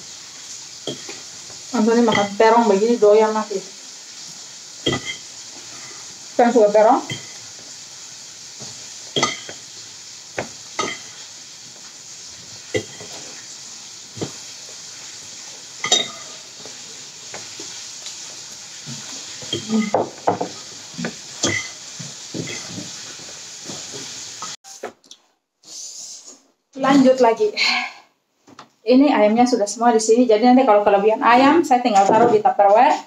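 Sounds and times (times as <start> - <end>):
chicken sizzling in hot oil: 0.0 - 24.6
utensil clinking and scraping pan: 4.8 - 6.1, 15.8 - 16.4, 21.4 - 23.0.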